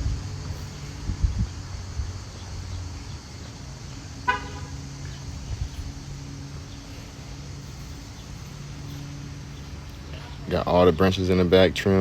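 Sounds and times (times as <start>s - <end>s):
low motor hum: 0.0s - 12.0s
short car horn toot: 4.3s - 4.8s.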